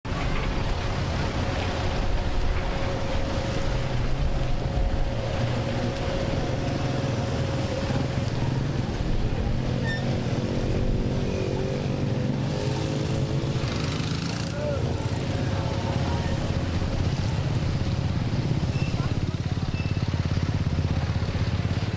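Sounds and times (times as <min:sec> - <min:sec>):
jet engines rumbling and whining: 0:00.1 - 0:13.8
faint voices: 0:14.2 - 0:17.8.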